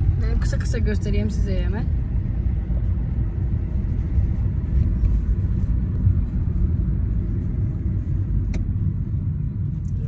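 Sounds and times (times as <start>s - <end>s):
moving car rumble: 0.0s - 10.0s.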